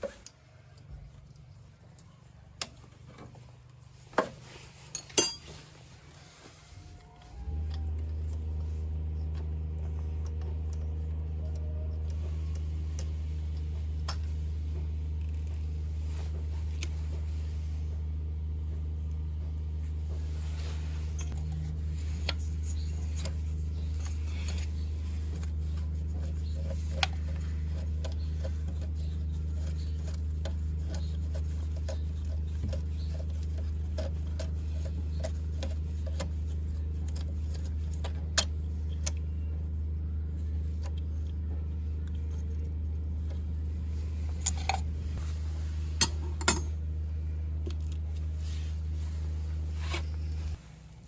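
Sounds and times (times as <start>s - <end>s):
steady low hum: 0.0s - 51.0s
metal parts and tools clinking: 4.8s - 5.8s, 46.0s - 46.8s.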